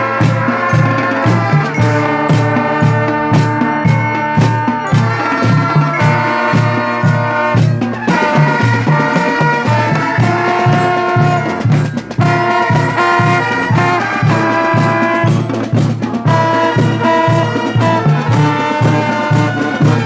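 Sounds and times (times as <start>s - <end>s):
upbeat music with brass horns: 0.0s - 20.0s.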